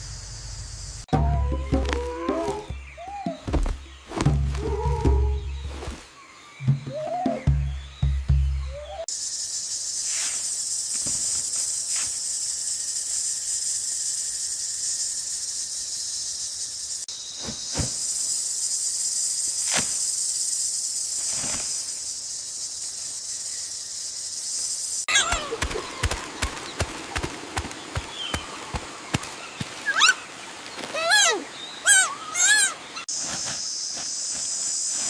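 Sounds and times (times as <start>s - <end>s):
high-pitched hiss: 0.0s - 1.1s, 9.0s - 25.1s, 32.8s - 35.0s.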